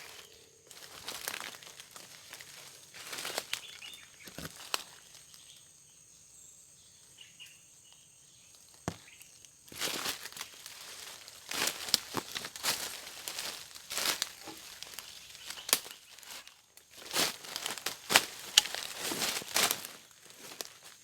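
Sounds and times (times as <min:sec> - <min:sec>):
leaves crackling underfoot: 0:00.0 - 0:05.8, 0:08.3 - 0:21.0
twigs snapping: 0:00.7 - 0:05.1, 0:08.8 - 0:21.0
faint bird chirps: 0:03.3 - 0:09.5.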